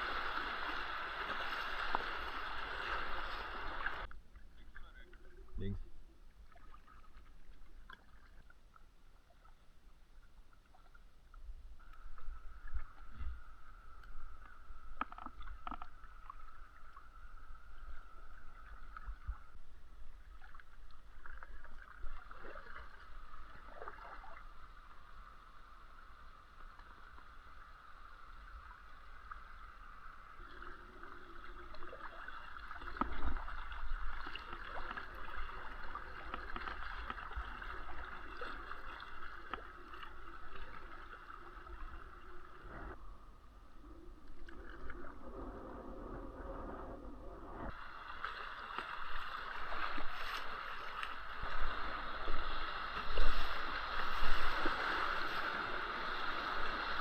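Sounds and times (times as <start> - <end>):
paddle splashing water: 30.6 - 43.0, 47.5 - 57.0.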